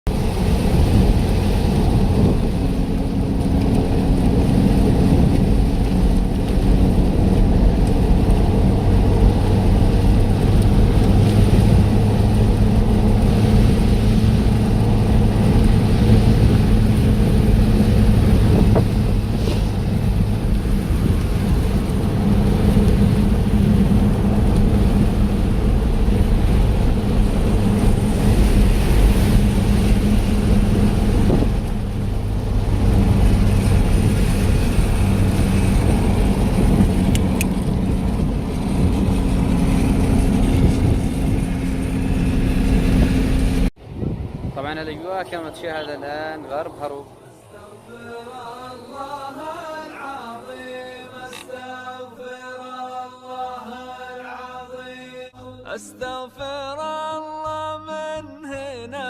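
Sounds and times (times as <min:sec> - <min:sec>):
car engine and road noise: 0:00.0 - 0:51.6.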